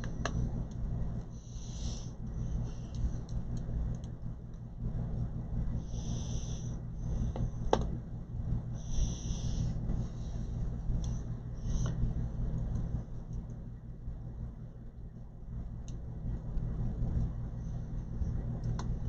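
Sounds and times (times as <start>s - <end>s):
steady low hum: 0.0s - 19.0s
soft breathing: 1.3s - 3.4s, 5.8s - 7.7s, 8.7s - 12.2s.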